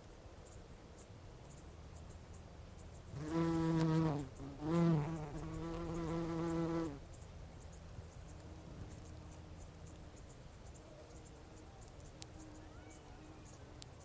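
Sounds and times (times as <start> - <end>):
bumblebee buzzing: 3.1 - 7.0.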